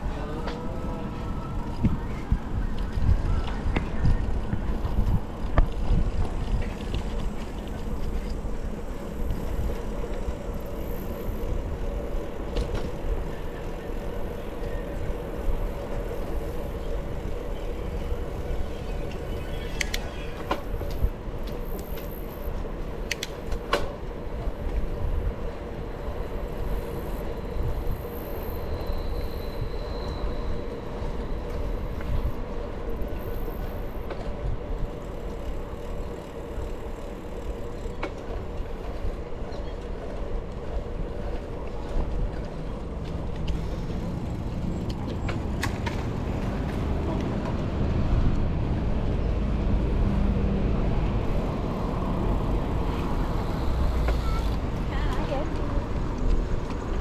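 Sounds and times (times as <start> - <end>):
wind on microphone: 0.0 - 22.8, 24.3 - 36.9
bicycle tyres rolling: 0.0 - 57.0
bike clicks and rattles: 1.6 - 29.7, 30.4 - 49.2.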